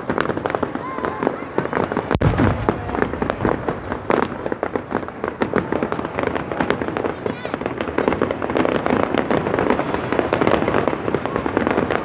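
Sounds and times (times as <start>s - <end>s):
fireworks crackling and popping: 0.0s - 12.0s
loud sharp firework bang: 2.1s - 7.0s
low rumble: 2.2s - 4.9s.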